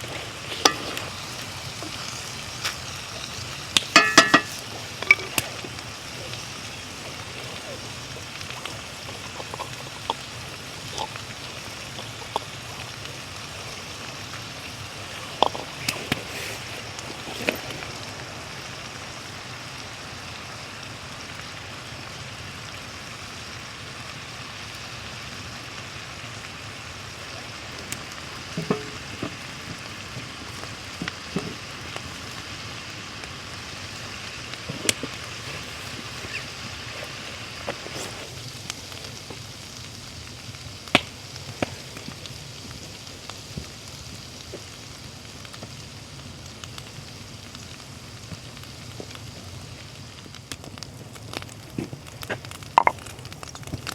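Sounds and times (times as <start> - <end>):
food sizzling in a pan: 0.0 - 53.9
sharp pops and clicks: 0.3 - 16.3, 34.4 - 39.4, 40.8 - 42.3, 50.4 - 53.9.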